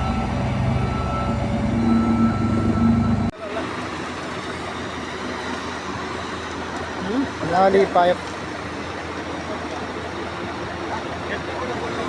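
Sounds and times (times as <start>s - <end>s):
reversing beep: 0.0s - 3.3s
construction site rumble: 0.0s - 12.0s
heavy vehicle engine running: 0.0s - 12.0s.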